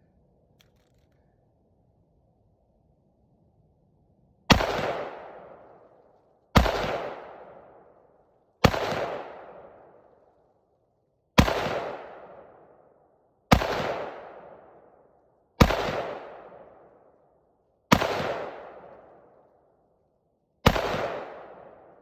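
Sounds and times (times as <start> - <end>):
rifle shots echoing: 4.5 - 6.0, 6.6 - 10.1, 11.4 - 12.8, 13.5 - 15.0, 15.6 - 17.0, 17.9 - 19.2, 20.6 - 22.0.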